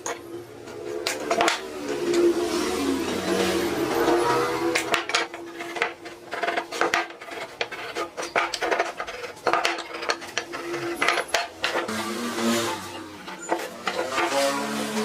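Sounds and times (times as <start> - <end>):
hand tools and wood clinking: 0.0 - 2.3, 3.2 - 15.0.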